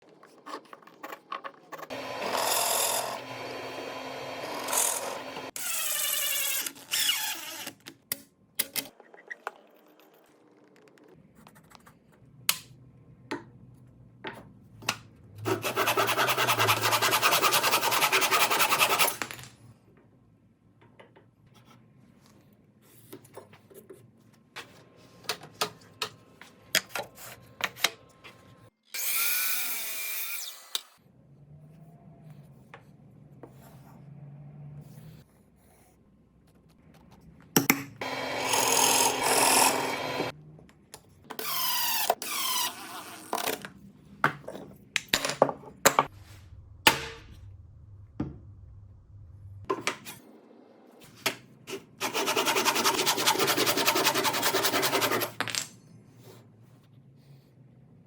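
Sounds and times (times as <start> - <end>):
power tool running: 1.9 - 5.5, 38.0 - 40.3.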